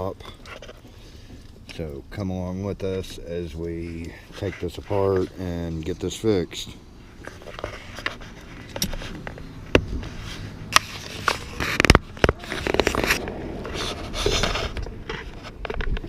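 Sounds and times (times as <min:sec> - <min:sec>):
scraping and rustling: 0:00.0 - 0:02.2, 0:02.8 - 0:16.0
sharp clicks and knocks: 0:10.7 - 0:16.0.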